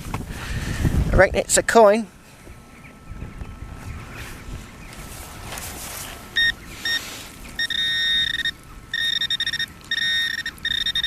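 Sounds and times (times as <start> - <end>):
soft rustling: 4.2 - 7.6
metal detector beeping: 6.4 - 11.0.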